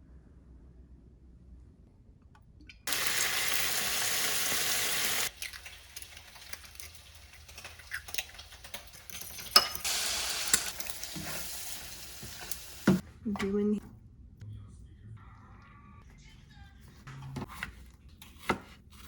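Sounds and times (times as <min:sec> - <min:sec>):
utensils and dishes clinking: 0:05.3 - 0:13.6.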